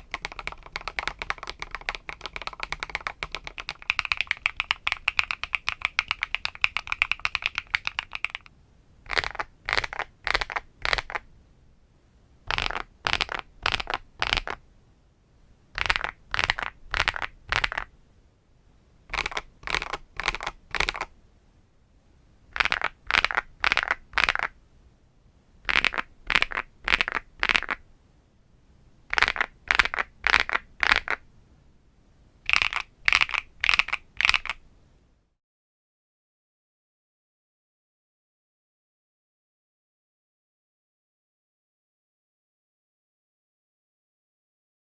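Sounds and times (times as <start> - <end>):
mechanical keyboard typing: 0.0 - 8.5, 9.1 - 11.2, 12.5 - 14.6, 15.8 - 17.9, 19.1 - 21.1, 22.6 - 24.5, 25.7 - 27.8, 29.1 - 31.2, 32.5 - 34.6.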